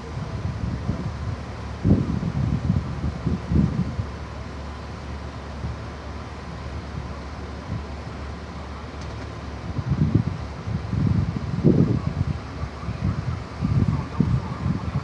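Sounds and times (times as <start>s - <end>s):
wind gusting against microphone: 0.0s - 4.2s, 9.3s - 15.0s.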